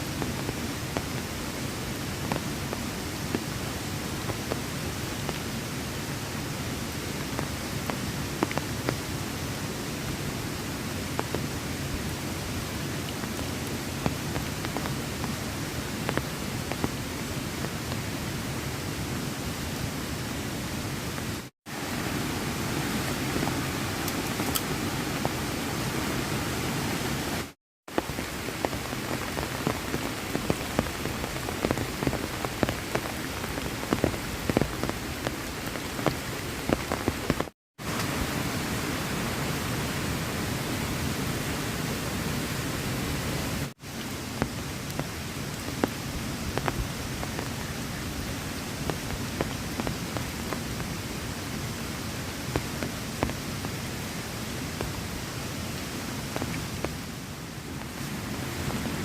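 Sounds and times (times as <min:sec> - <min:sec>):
heavy rain falling: 0:00.0 - 0:59.0.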